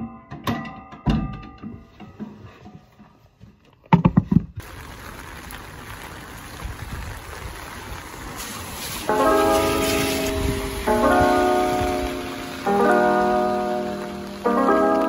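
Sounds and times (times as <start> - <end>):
steady rain falling: 4.6 - 15.0.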